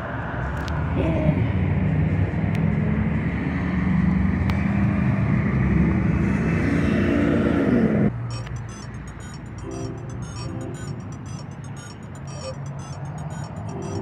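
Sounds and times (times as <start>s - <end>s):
vehicle engine humming: 7.3s - 14.0s.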